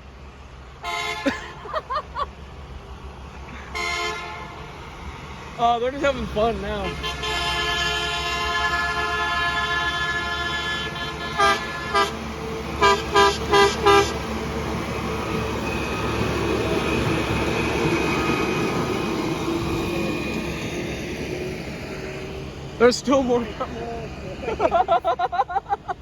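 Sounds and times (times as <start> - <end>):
horn toots: 0.8 - 1.7, 3.6 - 4.7, 6.7 - 14.3.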